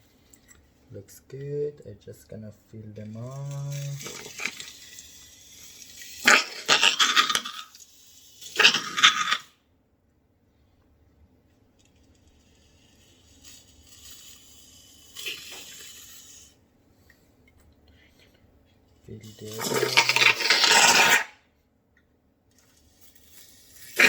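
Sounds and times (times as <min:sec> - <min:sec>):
siphon dispenser sputtering hiss: 0:01.0 - 0:09.3, 0:11.8 - 0:16.6, 0:19.1 - 0:21.3, 0:22.5 - 0:24.0.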